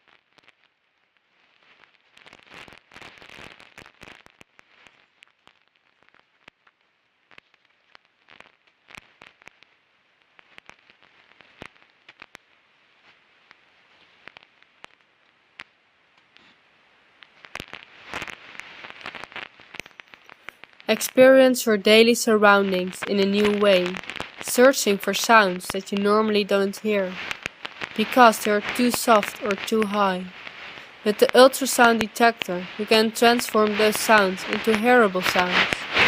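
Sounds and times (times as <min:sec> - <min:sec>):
faint hiss: 0:16.0 - 0:36.0
crackling and sharp clicks: 0:17.2 - 0:36.0.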